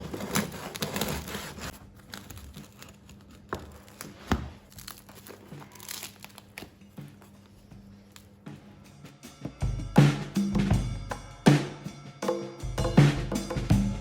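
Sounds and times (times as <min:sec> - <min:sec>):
crinkling and rustling: 0:00.0 - 0:08.4.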